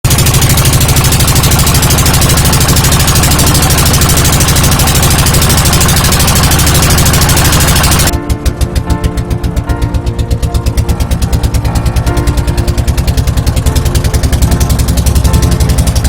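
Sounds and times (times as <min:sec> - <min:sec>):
boat engine chugging: 0:00.1 - 0:16.0.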